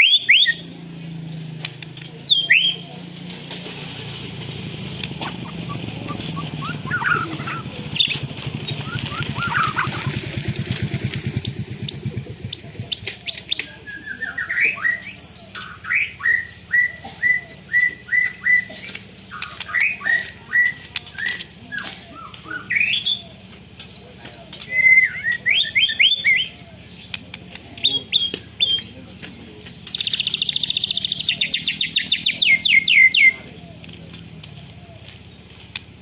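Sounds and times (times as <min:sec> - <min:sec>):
bird singing: 0:00.0 - 0:36.0
low pulsing rumble: 0:04.2 - 0:13.5.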